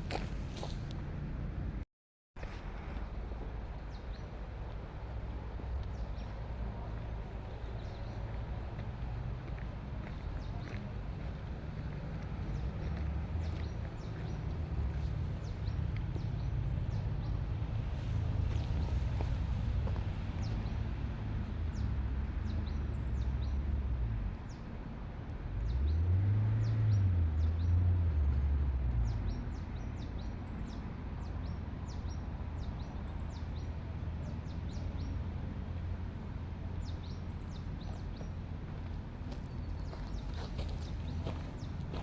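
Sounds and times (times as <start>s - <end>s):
steady low rumble: 2.4s - 23.5s
small birds chirping: 5.8s - 17.4s, 36.6s - 42.0s.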